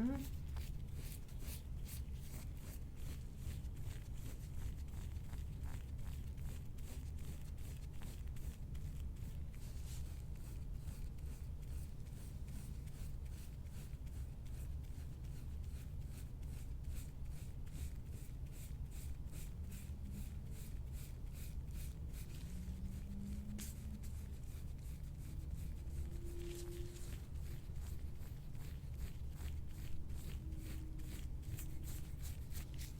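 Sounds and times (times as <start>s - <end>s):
tool scratching over skin: 0.0s - 32.9s.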